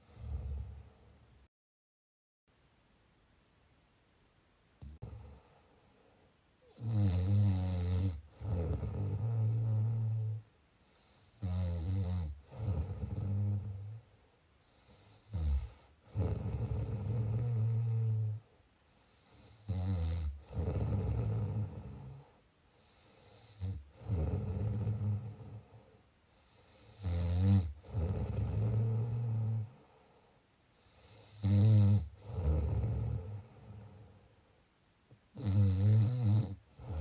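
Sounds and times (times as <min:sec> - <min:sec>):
person snoring: 0:00.0 - 0:01.0, 0:04.8 - 0:05.7, 0:06.6 - 0:14.0, 0:14.7 - 0:18.5, 0:19.1 - 0:30.0, 0:30.8 - 0:34.2, 0:35.3 - 0:37.0.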